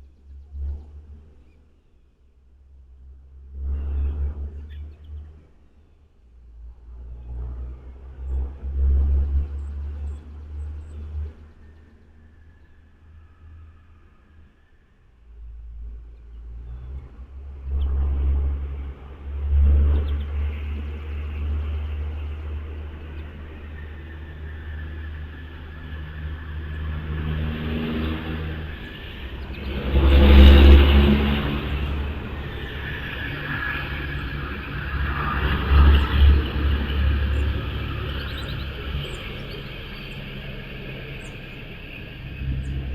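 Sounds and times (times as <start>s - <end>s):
vehicle passing by: 6.7s - 11.8s, 15.3s - 42.9s.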